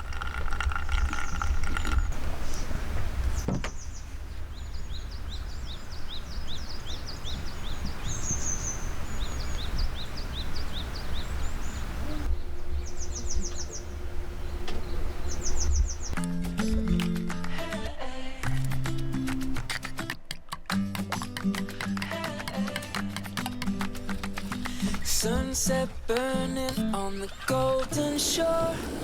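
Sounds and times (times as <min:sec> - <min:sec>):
small birds chirping: 0:00.8 - 0:16.3
low outdoor rumble and hiss: 0:02.1 - 0:16.2
bird trills: 0:03.3 - 0:16.2.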